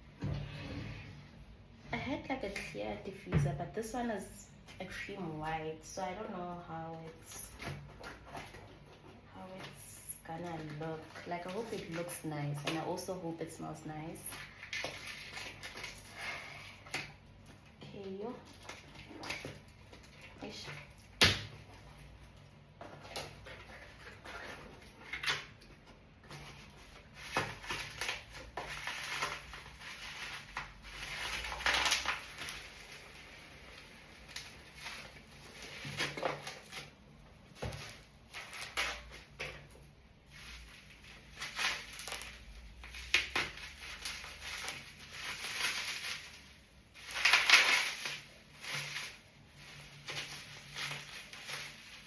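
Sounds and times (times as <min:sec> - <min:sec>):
packaging rustling and tearing: 0:14.3 - 0:17.8, 0:18.4 - 0:52.0.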